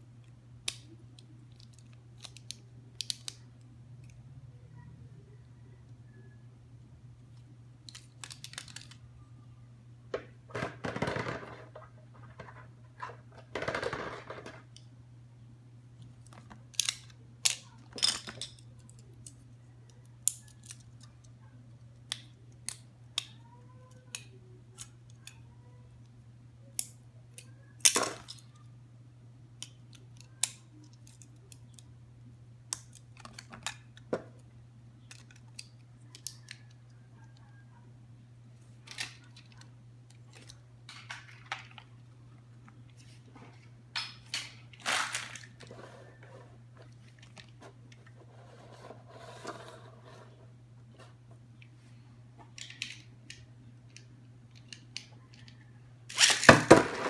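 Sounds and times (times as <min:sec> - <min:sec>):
clicks of small plastic parts: 0:00.6 - 0:04.2, 0:07.8 - 0:09.0, 0:35.0 - 0:37.5, 0:52.4 - 0:56.5
rustling packaging: 0:44.7 - 0:46.2.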